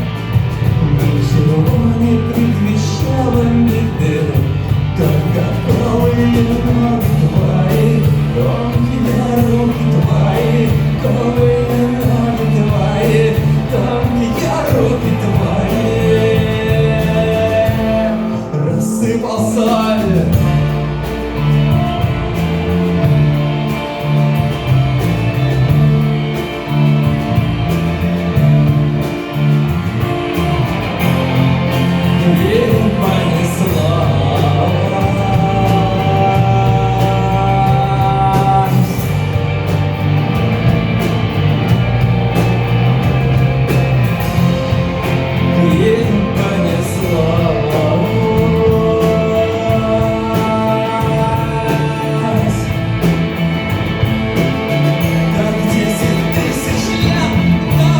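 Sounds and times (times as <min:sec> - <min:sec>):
bass guitar: 0:00.0 - 0:57.9
guitars: 0:00.0 - 0:57.9
steady drum beat: 0:00.0 - 0:57.9.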